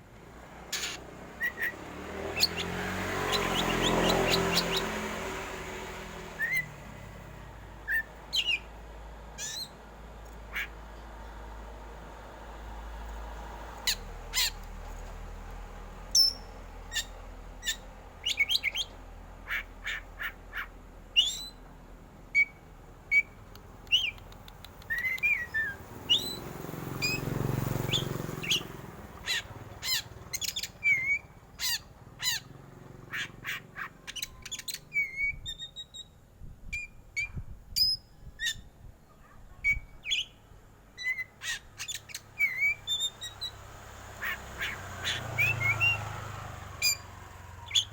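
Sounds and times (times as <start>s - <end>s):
bird calling harsh notes: 0.7s - 5.1s, 44.2s - 47.9s
bird whistled notes: 6.4s - 6.7s, 24.9s - 26.4s.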